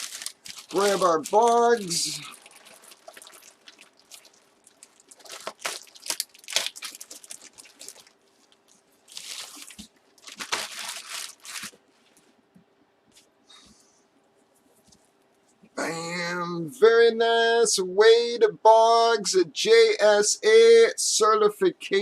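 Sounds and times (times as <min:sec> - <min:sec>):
plastic packaging crinkling: 0:00.0 - 0:12.2.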